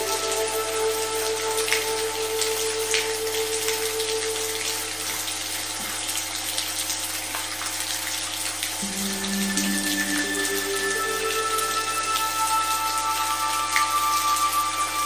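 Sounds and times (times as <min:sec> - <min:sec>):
steady rain: 0:00.0 - 0:15.0
electronic drone of held tones: 0:08.8 - 0:15.0.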